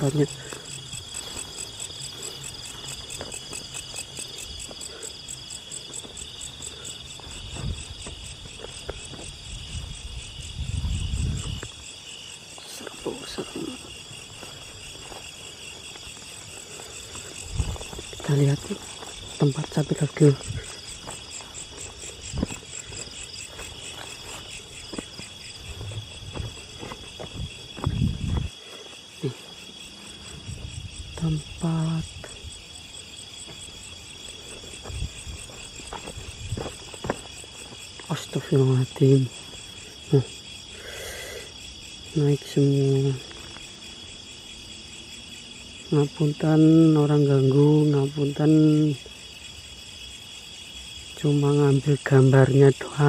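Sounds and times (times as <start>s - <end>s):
crickets trilling and chirping: 0.0s - 53.0s
soft low thuds: 24.5s - 28.5s.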